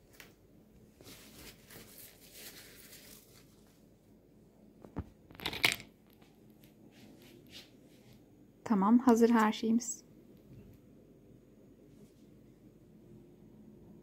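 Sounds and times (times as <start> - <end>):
handling pizza toppings: 0.9 - 3.9.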